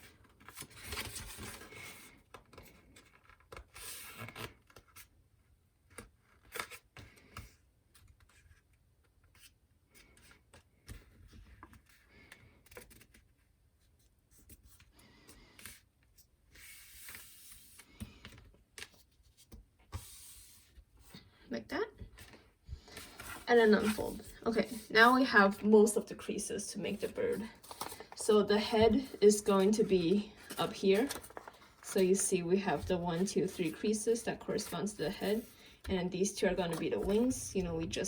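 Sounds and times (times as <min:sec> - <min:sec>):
paper being folded and creased: 0:00.0 - 0:05.1, 0:07.9 - 0:14.9, 0:22.1 - 0:25.7, 0:26.8 - 0:33.8.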